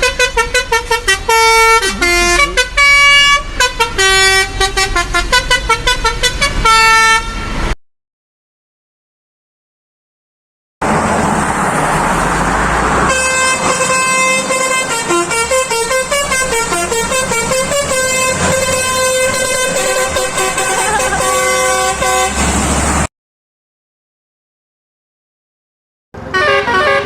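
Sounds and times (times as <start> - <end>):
engine and road noise: 0.0 - 7.8, 10.8 - 23.1, 26.2 - 27.0
truck melody horn: 0.0 - 7.8, 13.0 - 23.0, 26.2 - 27.0.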